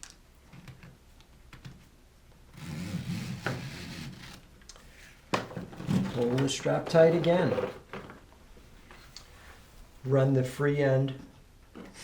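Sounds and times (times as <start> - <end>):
fabric strap sliding through buckle: 2.6 - 4.4.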